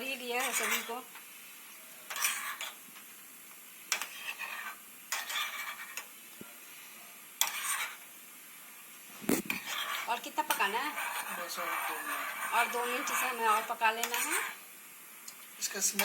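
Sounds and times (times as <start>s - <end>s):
spoon scraping a pan: 0.0s - 1.1s, 2.1s - 2.8s, 3.9s - 6.1s, 7.4s - 8.1s, 9.2s - 14.6s.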